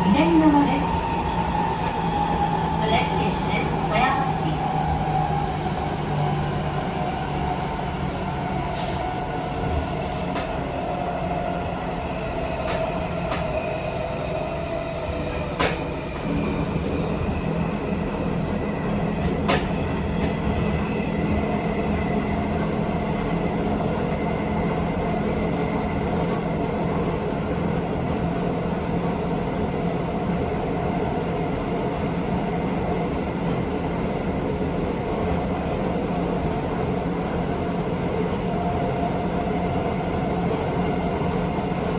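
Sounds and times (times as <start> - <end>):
train running noise: 0.0 - 41.9.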